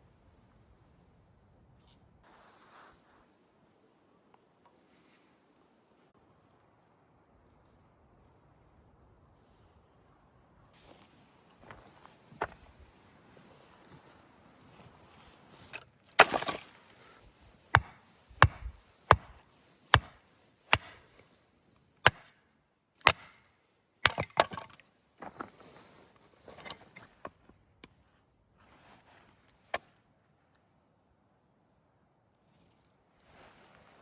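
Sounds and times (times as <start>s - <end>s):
sharp blows on wood: 17.4s - 21.2s, 22.0s - 22.4s, 23.0s - 24.6s.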